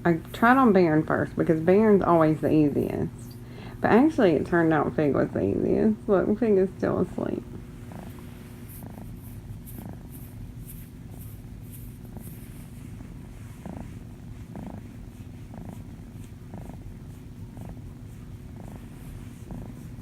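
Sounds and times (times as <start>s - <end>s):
kitten purring: 0.0s - 20.0s.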